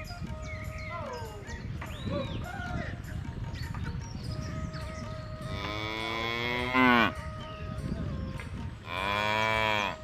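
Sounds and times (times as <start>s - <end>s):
cow mooing: 5.6s - 7.2s, 8.9s - 10.0s.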